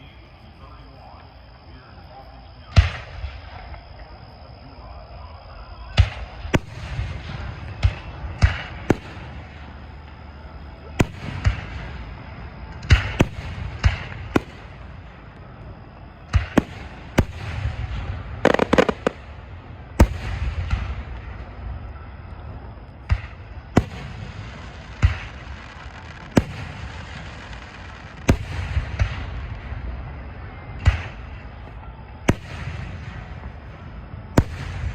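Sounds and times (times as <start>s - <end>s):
fireworks bangs: 2.6s - 4.6s, 5.8s - 34.9s
crackling shots: 2.7s - 3.8s, 6.0s - 10.2s, 10.9s - 15.4s, 16.2s - 21.6s, 22.9s - 29.9s, 30.8s - 31.6s, 32.3s - 34.9s.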